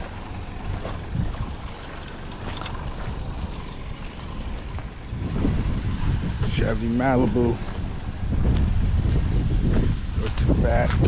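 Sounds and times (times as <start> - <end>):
car engine and road rumble: 0.0 - 11.0.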